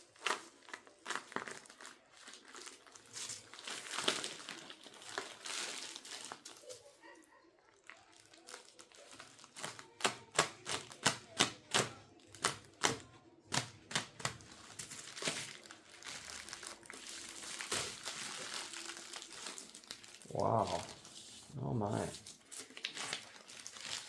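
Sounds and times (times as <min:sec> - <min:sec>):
wrapping crinkling: 0:00.0 - 0:24.0.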